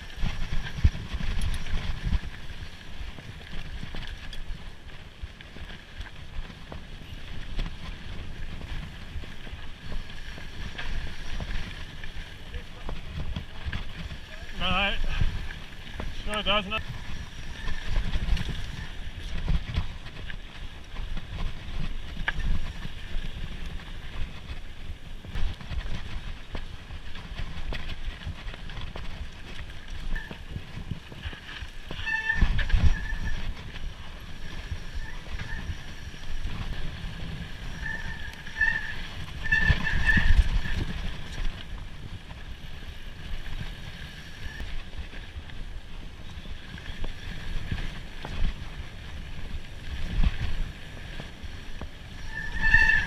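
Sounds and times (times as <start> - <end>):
bike tyres rumbling and rattling: 0.0 - 53.0
wind buffeting microphone: 0.0 - 53.0
high squeaks: 31.9 - 33.5, 52.2 - 53.0.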